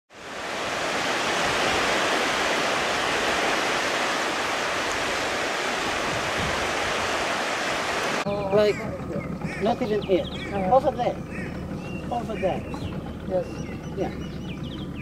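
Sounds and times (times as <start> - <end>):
rushing water and wind: 0.1 - 9.8.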